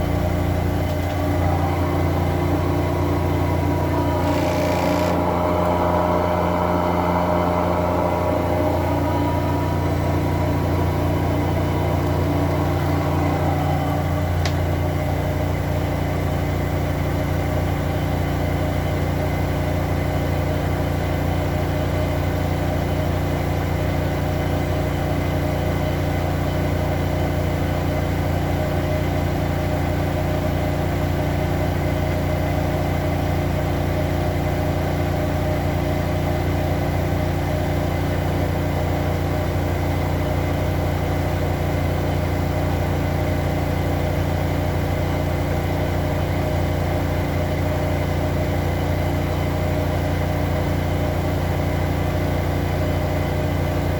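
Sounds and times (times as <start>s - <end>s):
washing machine spinning: 0.0s - 19.5s.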